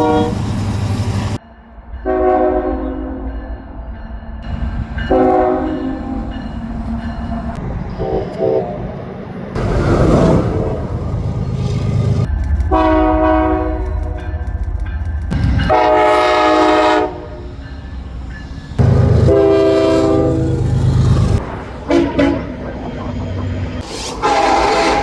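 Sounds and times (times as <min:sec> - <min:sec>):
train horn blasts: 0:00.0 - 0:00.6, 0:02.0 - 0:03.2, 0:05.0 - 0:06.5, 0:07.9 - 0:08.9, 0:12.7 - 0:14.4, 0:15.5 - 0:17.7, 0:18.8 - 0:21.0, 0:21.8 - 0:22.6, 0:24.2 - 0:25.0
low rumble of passing train: 0:00.0 - 0:25.0.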